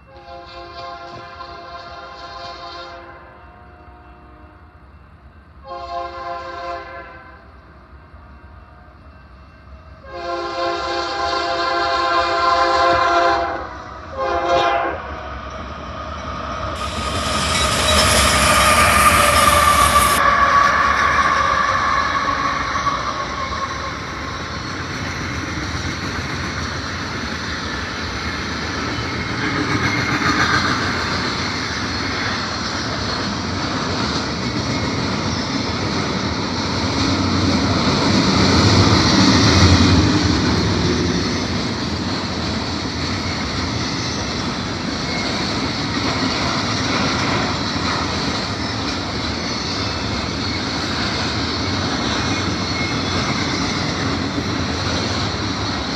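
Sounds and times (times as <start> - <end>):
locomotive horn: 0.0 - 4.8, 5.6 - 7.5, 10.0 - 15.2, 16.8 - 24.3
freight train cars rolling past: 0.0 - 55.9.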